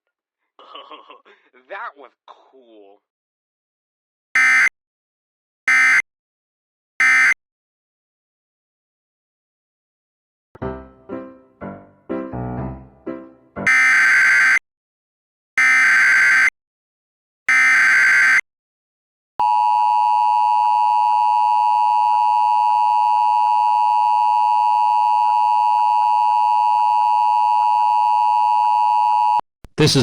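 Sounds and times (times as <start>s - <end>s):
steady two-tone alert signal: 13.7s - 14.6s.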